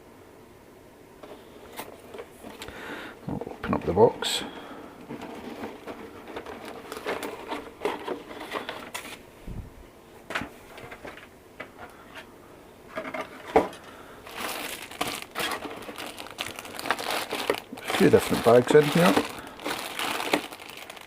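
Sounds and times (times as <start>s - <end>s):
plastic bags crinkling: 4.2s - 9.2s, 13.4s - 21.0s.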